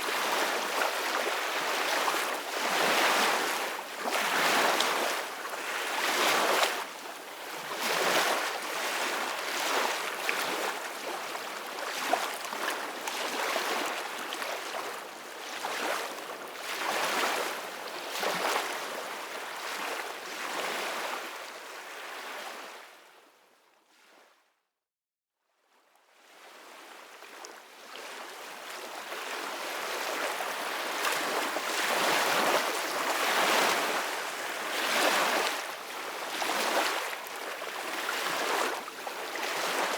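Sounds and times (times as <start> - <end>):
ocean waves washing ashore: 28.8 - 39.9.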